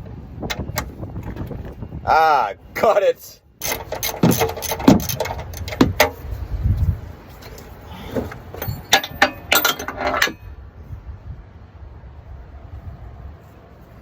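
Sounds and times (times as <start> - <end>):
metal hand tools clinking: 8.5 - 10.5.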